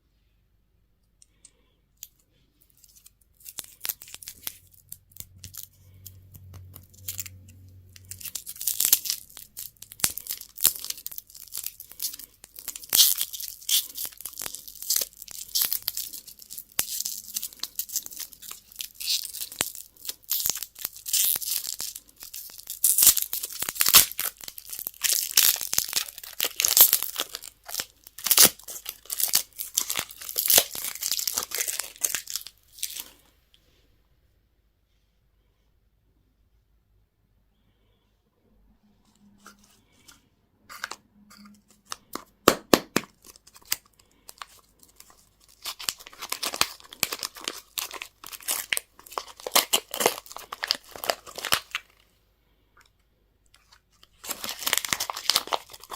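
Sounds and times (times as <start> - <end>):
wrappers tearing and crinkling: 2.7 - 33.2, 43.0 - 52.0, 53.6 - 55.9.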